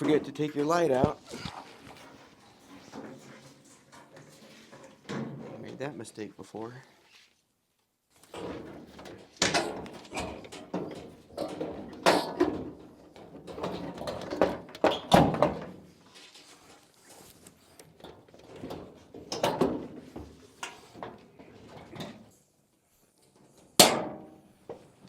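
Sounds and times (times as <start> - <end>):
panels knocking and scraping: 0.0 - 6.1, 8.2 - 16.9, 17.9 - 22.3.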